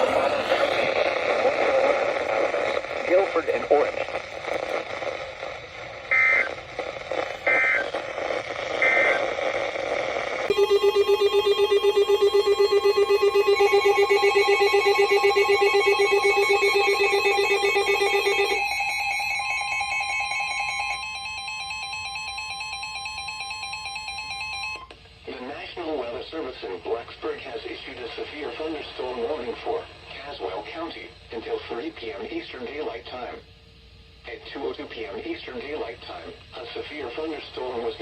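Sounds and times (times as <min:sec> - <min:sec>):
noisy radio audio: 0:00.0 - 0:10.8, 0:12.4 - 0:18.6, 0:25.2 - 0:33.5, 0:34.2 - 0:38.0
warbling data bursts: 0:10.5 - 0:20.5
pulsing electronic alarm tone: 0:10.5 - 0:24.8.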